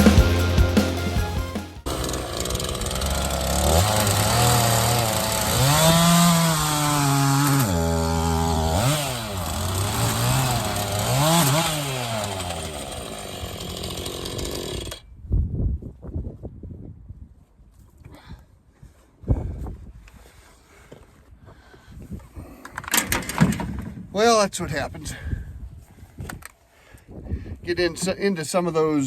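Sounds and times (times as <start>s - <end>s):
chainsaw cutting logs: 0.0s - 15.1s.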